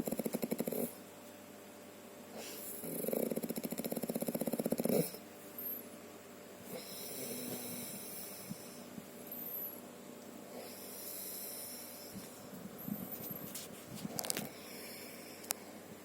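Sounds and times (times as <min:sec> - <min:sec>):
person snoring faintly: 0:02.4 - 0:05.2, 0:06.7 - 0:08.9.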